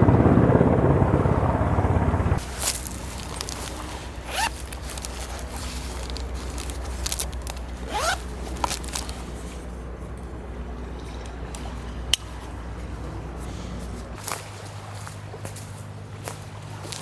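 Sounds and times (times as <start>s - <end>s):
zipper pulled: 2.4s - 9.6s
gear clicking and rustling: 2.4s - 17.0s.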